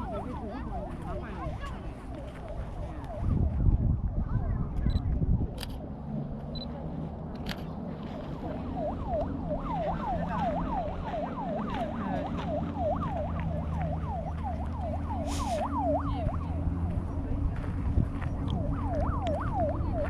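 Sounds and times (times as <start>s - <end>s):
siren in fast yelp pattern: 0.0s - 1.7s, 8.8s - 16.6s
low traffic rumble: 0.0s - 20.0s.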